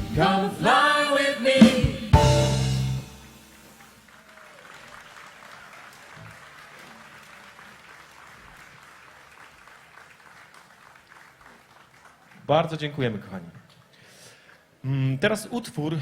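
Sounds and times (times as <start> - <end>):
audience applauding: 3.7 - 12.5.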